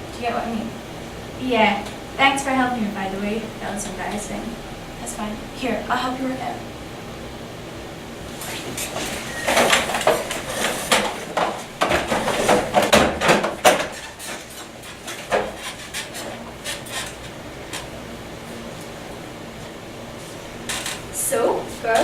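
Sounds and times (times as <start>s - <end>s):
furniture knocking and scraping on stage: 8.5s - 17.1s.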